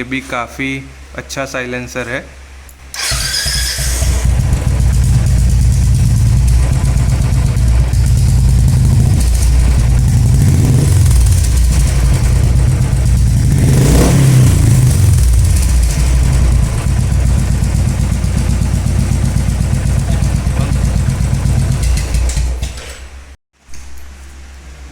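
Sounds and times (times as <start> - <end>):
motorcycle engine idling and revving: 3.0 - 22.9.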